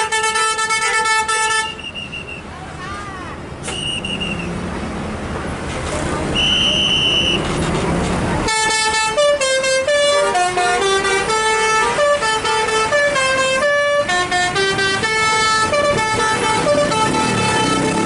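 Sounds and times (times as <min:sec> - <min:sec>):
musical air horn tune: 0:08.5 - 0:18.0.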